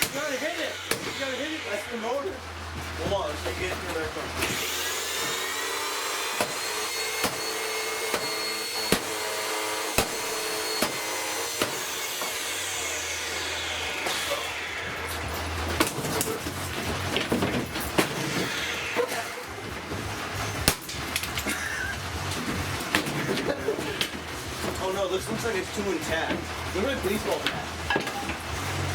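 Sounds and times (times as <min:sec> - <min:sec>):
vacuum cleaner motor whining: 0:00.0 - 0:02.5, 0:03.5 - 0:16.5, 0:18.0 - 0:20.6
sharp knocks: 0:00.9 - 0:01.2.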